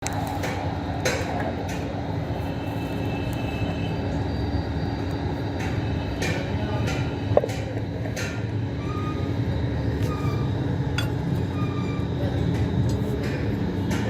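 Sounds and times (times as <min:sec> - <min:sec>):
low mechanical rumble: 0:00.0 - 0:14.0.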